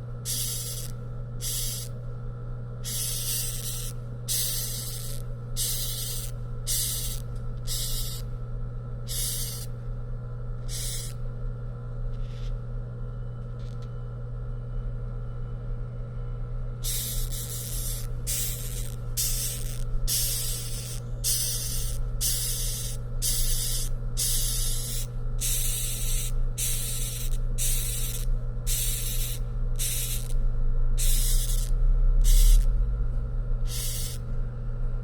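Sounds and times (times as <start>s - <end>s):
steady low hum: 0.0s - 35.0s
beetle hissing pulses: 0.3s - 1.9s, 2.8s - 8.2s, 9.1s - 9.7s, 10.7s - 11.2s, 16.8s - 30.4s, 31.0s - 32.7s, 33.7s - 34.2s.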